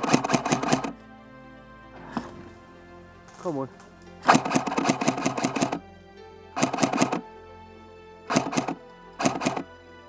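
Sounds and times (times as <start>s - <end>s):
burst of rapid cracks: 0.0s - 1.0s, 4.2s - 5.8s, 6.6s - 7.2s, 8.3s - 9.7s
background music with sustained chords: 0.0s - 10.0s.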